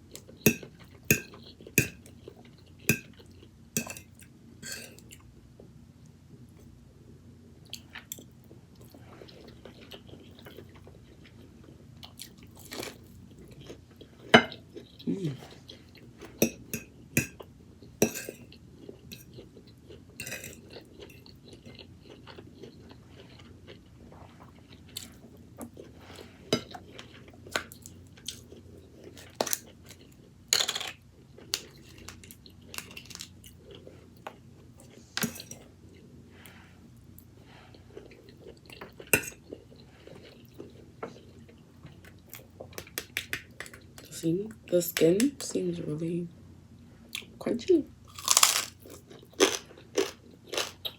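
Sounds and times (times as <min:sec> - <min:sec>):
chewing and crunching food: 0:00.0 - 0:05.7, 0:07.5 - 0:44.1, 0:48.0 - 0:50.9
cutlery clicking on a plate: 0:00.5 - 0:02.0, 0:16.4 - 0:17.4.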